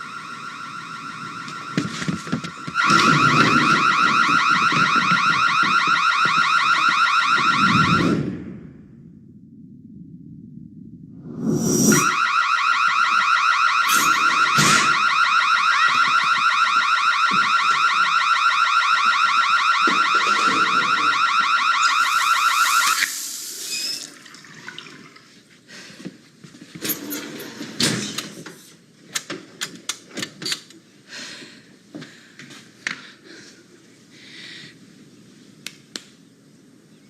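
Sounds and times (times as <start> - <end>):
fire alarm pulsing: 0.0 - 8.4, 11.9 - 23.2.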